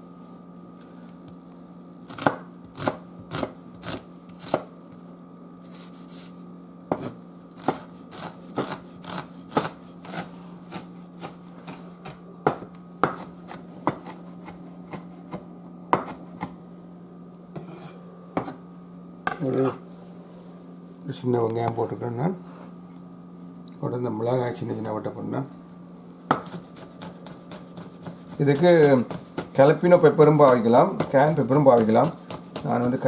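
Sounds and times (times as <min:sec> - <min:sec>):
knife chopping on cutting board: 0:02.1 - 0:04.7, 0:06.9 - 0:16.6, 0:17.6 - 0:18.6, 0:26.3 - 0:33.0.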